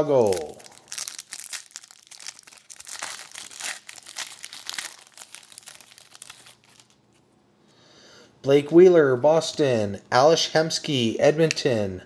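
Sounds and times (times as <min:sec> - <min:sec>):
plastic wrapper crinkling and tearing: 0:00.0 - 0:07.2.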